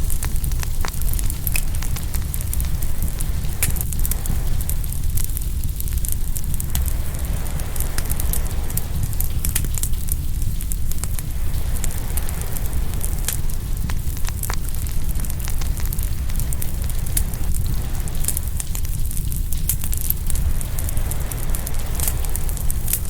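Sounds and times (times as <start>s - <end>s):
low rumble: 0.0s - 23.0s
wood fire crackling and popping: 0.0s - 23.0s
waves washing: 20.3s - 23.0s.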